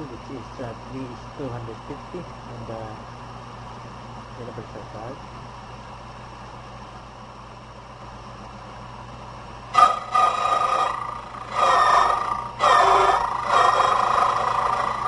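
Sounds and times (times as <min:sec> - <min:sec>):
key cutting machine whining: 0:09.8 - 0:15.0.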